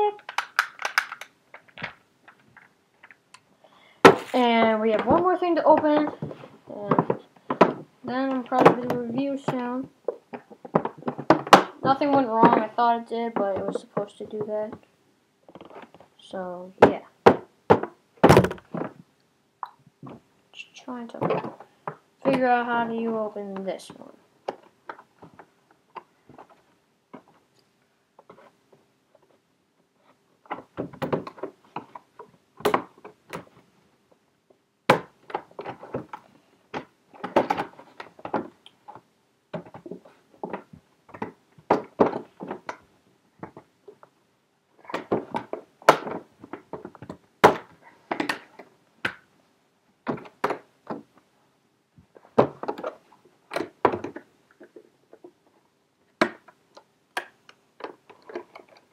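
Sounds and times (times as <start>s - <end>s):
packaging knocks and crinkling: 0.2s - 3.2s.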